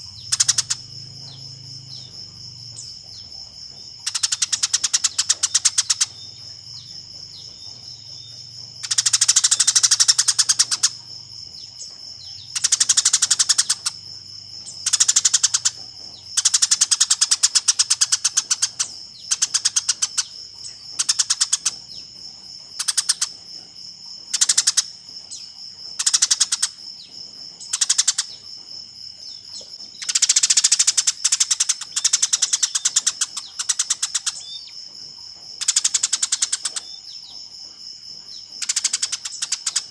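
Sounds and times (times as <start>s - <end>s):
sparrow shrill chattering chirps: 0.0s - 3.3s, 4.0s - 22.1s, 29.3s - 34.8s.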